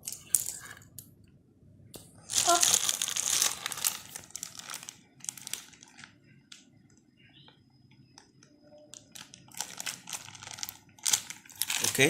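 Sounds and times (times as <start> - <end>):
plastic packaging crinkling: 2.2 - 6.2, 8.9 - 12.0.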